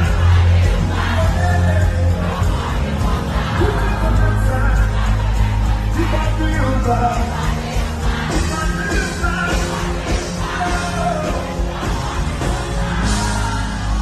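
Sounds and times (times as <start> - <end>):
bass-heavy beat: 0.0 - 14.0
people singing: 0.0 - 14.0.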